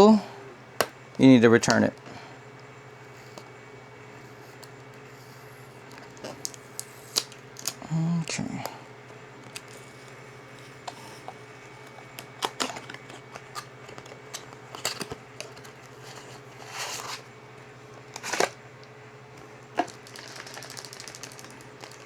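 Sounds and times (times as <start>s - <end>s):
steady low hum: 0.0s - 22.0s
packaging rustle: 9.4s - 17.3s, 18.0s - 18.6s, 19.8s - 22.0s.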